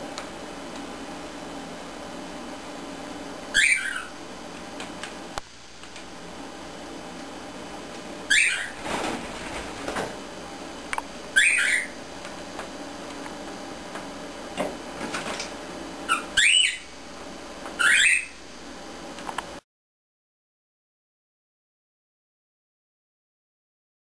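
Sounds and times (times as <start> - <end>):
cockatiel calling: 3.5 - 4.2, 8.3 - 8.8, 11.3 - 12.0, 16.1 - 16.9, 17.8 - 18.4.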